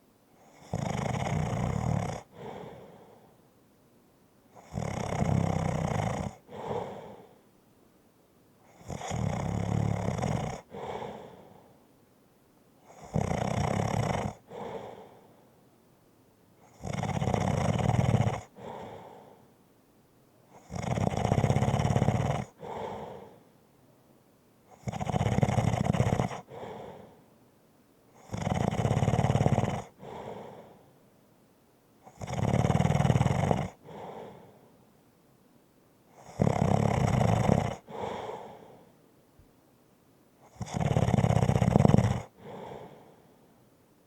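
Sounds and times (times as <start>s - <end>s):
light rumbling snoring: 0.3s - 3.4s, 4.5s - 7.4s, 8.6s - 11.8s, 12.8s - 15.6s, 16.6s - 19.6s, 20.5s - 23.6s, 24.7s - 27.3s, 28.1s - 31.0s, 32.0s - 34.8s, 36.1s - 39.0s, 40.4s - 43.6s
soft breath sound: 2.2s - 3.8s, 6.2s - 7.8s, 10.5s - 12.1s, 14.3s - 15.8s, 18.2s - 19.8s, 22.5s - 24.0s, 26.2s - 28.2s, 29.8s - 31.3s, 33.4s - 35.1s, 37.6s - 39.5s, 42.0s - 44.0s.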